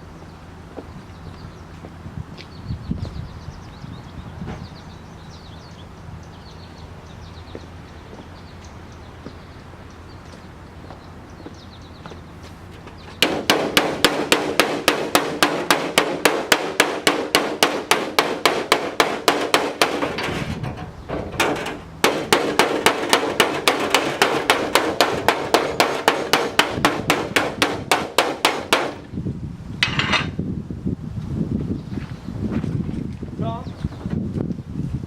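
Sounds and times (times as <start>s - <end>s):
hammering on sheet metal: 13.2s - 29.0s.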